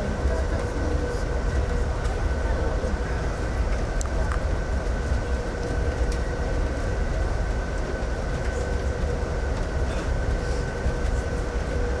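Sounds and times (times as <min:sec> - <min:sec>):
train rumble from inside car: 0:00.0 - 0:12.0.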